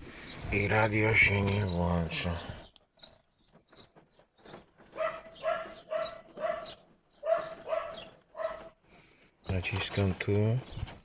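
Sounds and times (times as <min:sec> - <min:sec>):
dog barking: 0:04.9 - 0:08.8.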